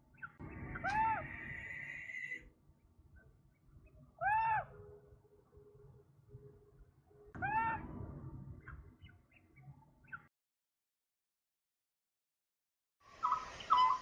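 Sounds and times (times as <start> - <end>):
faint chirps: 0.0 - 2.5.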